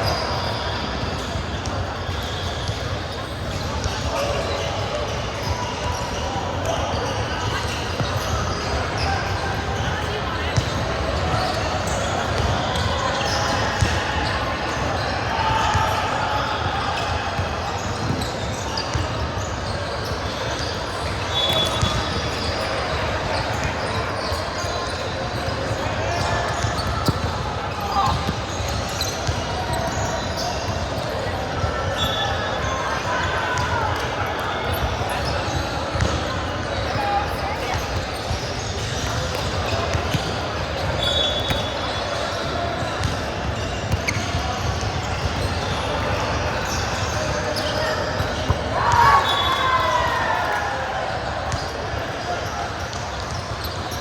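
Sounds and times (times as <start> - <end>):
echoing hall noise: 0.0 - 54.0
indistinct chatter: 0.0 - 54.0
shoe squeal: 0.0 - 54.0
basketball bouncing on gym floor: 35.9 - 36.3, 42.4 - 45.8.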